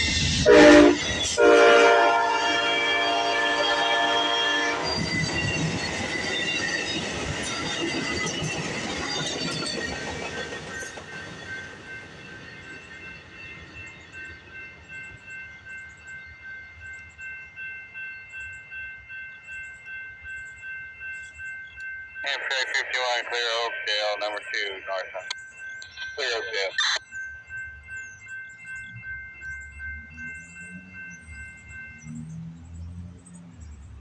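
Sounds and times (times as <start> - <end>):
diesel locomotive passing: 0.0 - 34.0
train wheels clattering on rails: 4.8 - 16.2
high ringing tone: 24.4 - 32.0.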